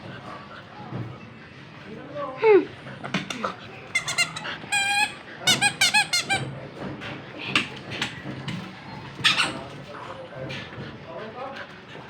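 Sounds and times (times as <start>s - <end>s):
squeaky dog toy squeaking: 3.9s - 6.5s, 9.2s - 9.6s.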